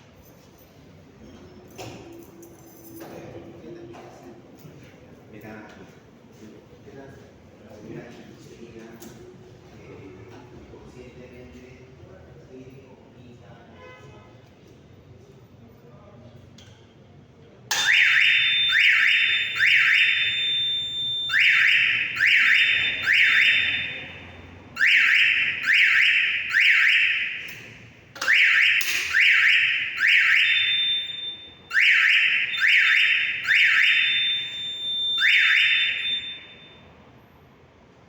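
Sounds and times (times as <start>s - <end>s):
fire alarm rising tones: 17.7s - 36.9s.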